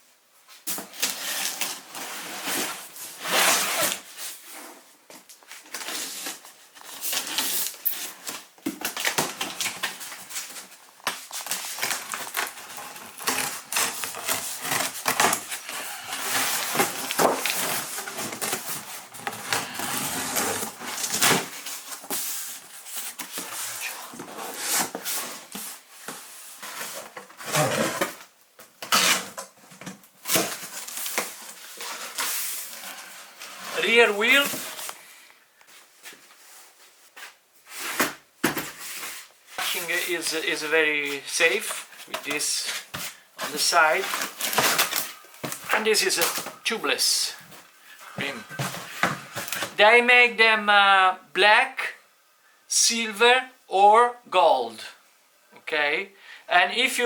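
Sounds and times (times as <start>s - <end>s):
packaging rustling and crinkling: 5.2s - 35.0s, 41.0s - 46.8s.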